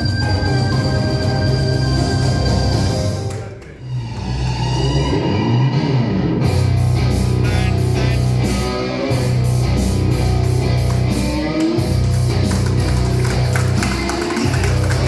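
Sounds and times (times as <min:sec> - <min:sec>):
rock music with distorted guitar: 0:04.9 - 0:15.0.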